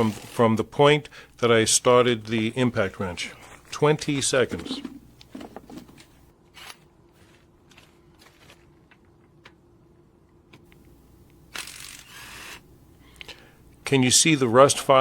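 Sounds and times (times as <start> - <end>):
low steady hum: 0.0 - 6.4, 7.0 - 15.0.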